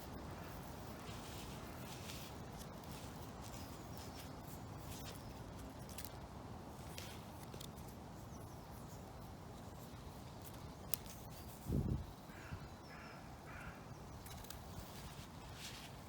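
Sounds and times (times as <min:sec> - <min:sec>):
gusty wind: 0:11.5 - 0:12.8.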